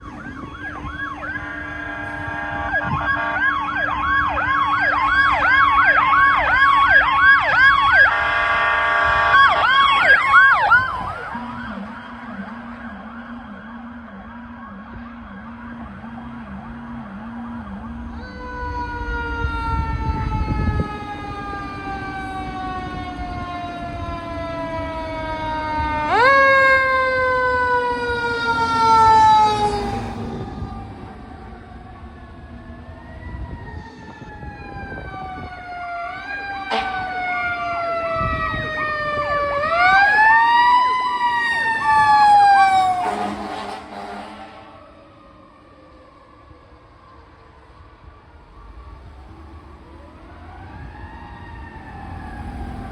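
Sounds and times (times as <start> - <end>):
electronic siren yelp: 0.0 - 46.3
falling siren wail: 0.0 - 52.9
horn honks: 1.4 - 3.8, 8.1 - 9.8, 42.9 - 44.9.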